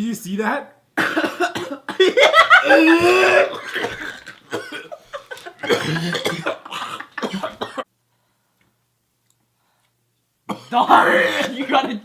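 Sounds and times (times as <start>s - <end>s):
man coughing and retching: 1.0s - 7.9s, 10.5s - 12.0s.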